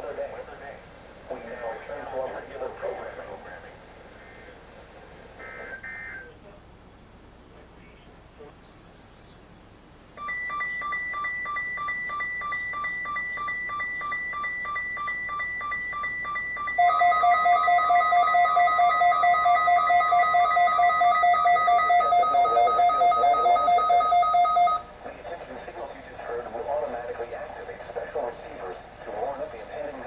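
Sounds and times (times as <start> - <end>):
lower-pitched louder alarm: 10.2 - 24.9
warbling electronic alarm: 10.2 - 24.9.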